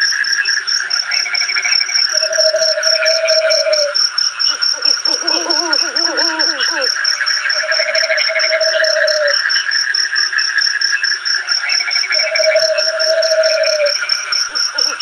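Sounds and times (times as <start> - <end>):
frog trilling call: 0.0 - 15.0
high pulsing insect chirp: 0.0 - 15.0
rising and falling pitched calls: 2.1 - 9.4, 12.0 - 15.0.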